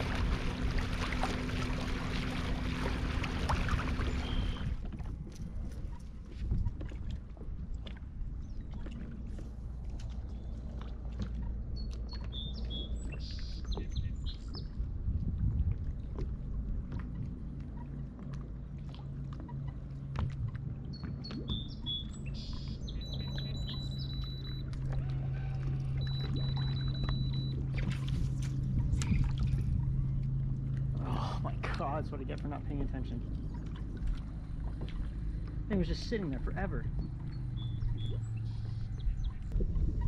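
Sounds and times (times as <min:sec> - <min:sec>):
steady low hum: 0:00.0 - 0:40.0
birds chirping: 0:03.0 - 0:04.8, 0:11.4 - 0:14.8, 0:19.5 - 0:40.0.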